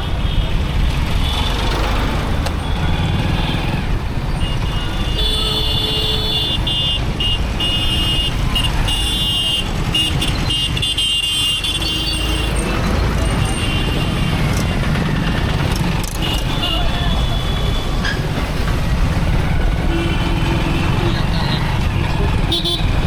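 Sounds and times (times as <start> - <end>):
vehicle horn honking: 4.4 - 12.5, 19.9 - 21.1, 22.5 - 22.9.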